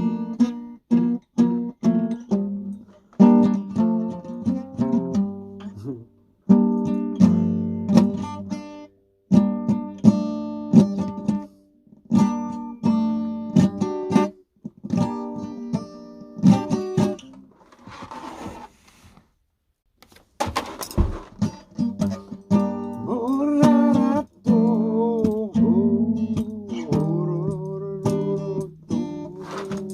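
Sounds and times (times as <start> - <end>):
plucked string instrument chords: 0.0 - 11.4, 21.4 - 29.9
rustling noise: 17.4 - 19.4, 20.0 - 21.7, 29.0 - 29.9.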